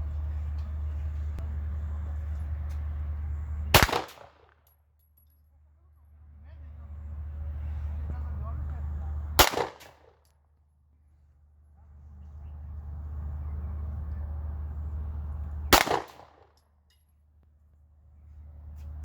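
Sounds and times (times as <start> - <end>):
low steady hum: 0.0 - 9.9, 10.5 - 19.0
pistol shots: 3.7 - 4.5, 9.4 - 10.1, 15.7 - 16.4.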